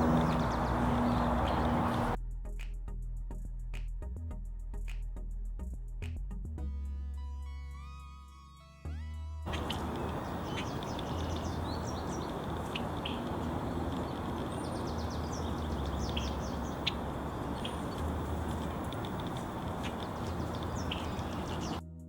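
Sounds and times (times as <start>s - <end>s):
low outdoor rumble: 0.0s - 2.2s, 9.5s - 21.8s
songbirds chirping and twittering: 0.0s - 2.2s, 9.5s - 21.8s.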